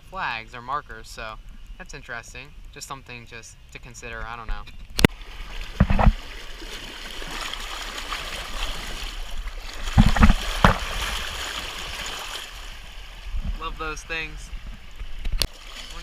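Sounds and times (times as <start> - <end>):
river water lapping: 5.1 - 16.0
sharp knocks near microphone: 5.8 - 6.2, 10.0 - 10.9.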